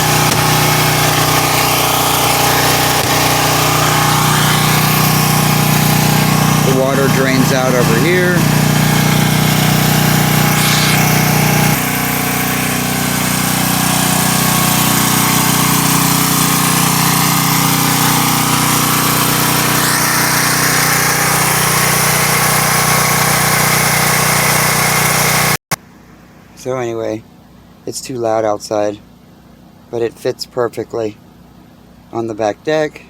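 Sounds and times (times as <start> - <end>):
generator engine running: 0.0 - 26.3.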